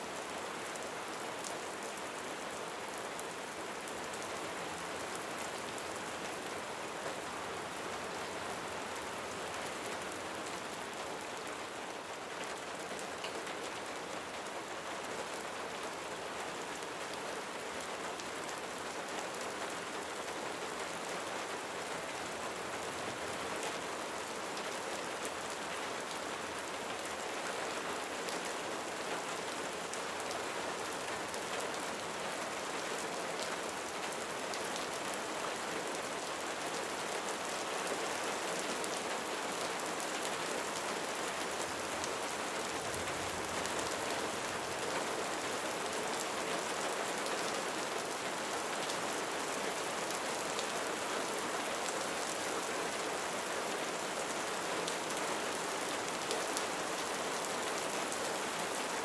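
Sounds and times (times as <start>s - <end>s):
rain falling on a roof: 0.0s - 59.0s.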